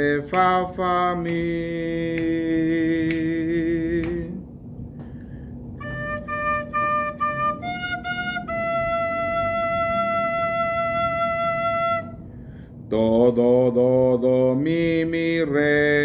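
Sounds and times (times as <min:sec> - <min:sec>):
recorder playing notes: 0:05.8 - 0:12.2.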